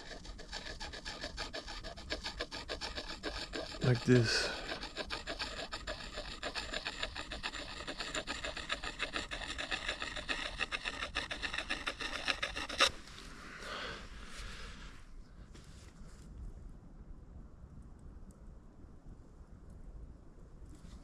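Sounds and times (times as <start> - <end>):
faint rustling: 12.8 - 16.5.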